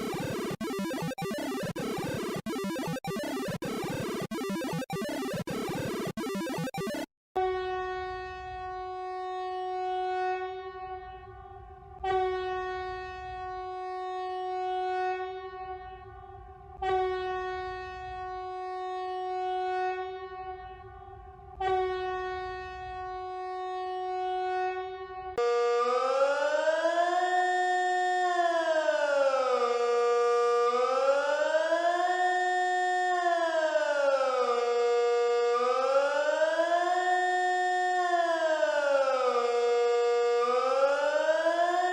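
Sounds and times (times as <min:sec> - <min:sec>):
siren rising in pitch: 0:00.0 - 0:07.7, 0:25.4 - 0:41.9
horn-like alarm blasts: 0:00.0 - 0:28.7, 0:29.3 - 0:31.0, 0:31.7 - 0:36.2, 0:37.0 - 0:41.9.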